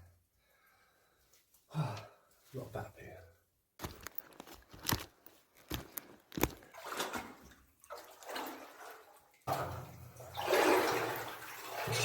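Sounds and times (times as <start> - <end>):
footsteps sloshing through water: 5.0 - 9.4
continuous water splashing: 6.4 - 12.0.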